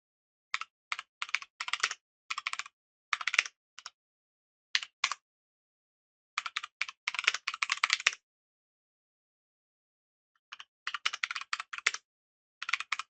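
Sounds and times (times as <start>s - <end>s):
computer keyboard typing: 0.6s - 3.5s, 6.4s - 8.2s, 10.5s - 12.0s, 12.6s - 13.0s.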